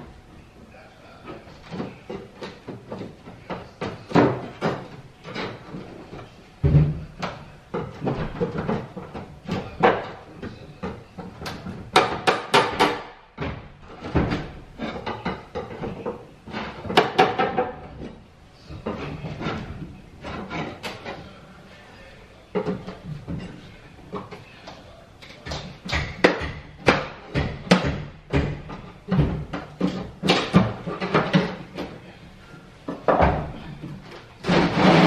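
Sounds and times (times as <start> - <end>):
knocking banging and clattering: 1.2 - 21.5, 22.5 - 35.0.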